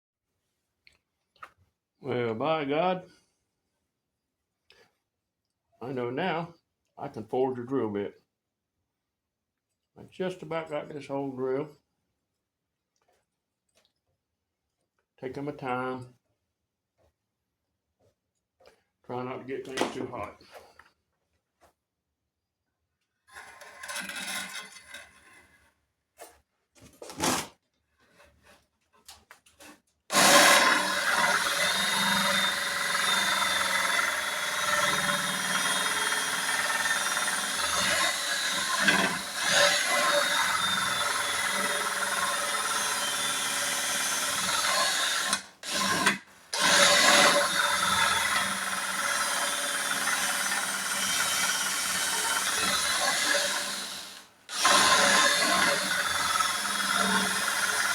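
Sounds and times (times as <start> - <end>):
cordless drill boring: 23.4 - 25.0, 30.1 - 57.9.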